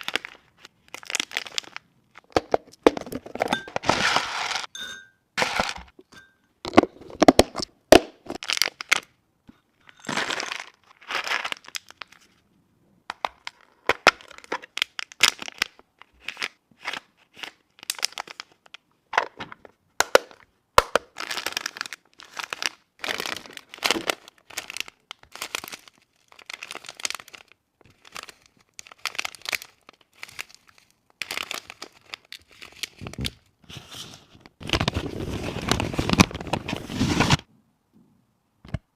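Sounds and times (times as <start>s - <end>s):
packaging crinkling and tearing: 0.0s - 4.7s, 8.3s - 9.1s, 10.1s - 12.4s, 13.4s - 18.8s, 20.9s - 37.5s.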